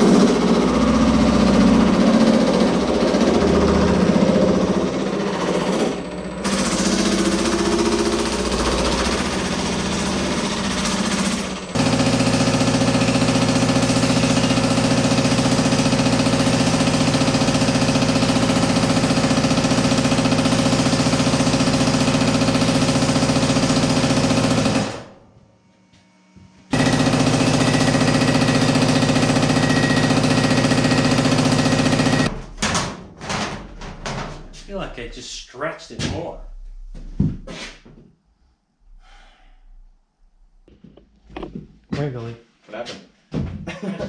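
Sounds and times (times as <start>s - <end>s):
power hammer striking sheet metal: 0.0s - 25.1s, 26.7s - 35.0s.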